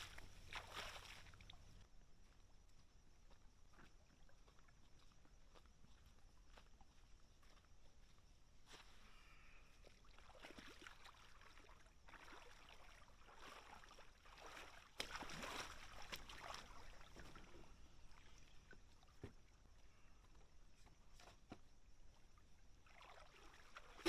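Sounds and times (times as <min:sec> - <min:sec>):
water swishing and splashing: 0:00.0 - 0:01.9, 0:09.6 - 0:20.1, 0:21.0 - 0:24.0.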